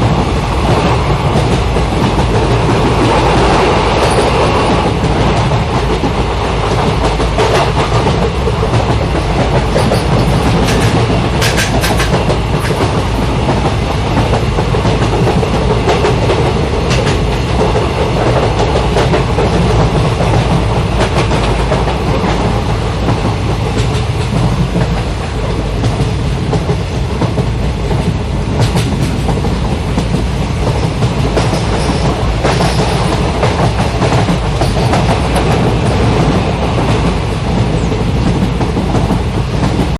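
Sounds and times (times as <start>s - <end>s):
train wagons rumbling on rails: 0.0s - 39.9s
wheels clacking over rail joints: 0.0s - 39.9s.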